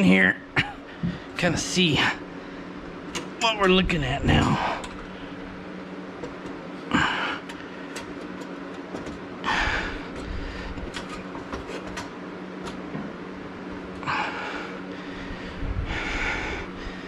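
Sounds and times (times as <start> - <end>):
steady low hum: 0.0 - 17.0
man breathing heavily: 0.8 - 1.4, 6.8 - 8.0, 9.4 - 11.0, 14.0 - 17.0.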